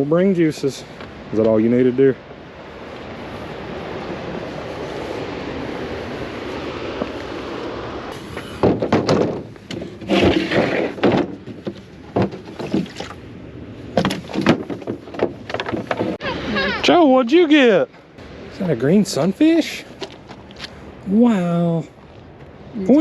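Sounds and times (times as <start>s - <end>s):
sharp knocks: 8.5s - 13.1s, 14.0s - 16.2s.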